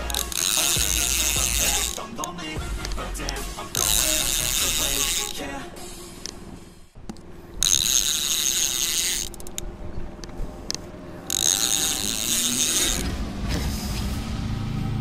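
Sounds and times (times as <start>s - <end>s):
fishing reel drag screaming: 0.0s - 2.0s, 3.8s - 5.5s, 7.6s - 9.4s, 11.3s - 13.1s.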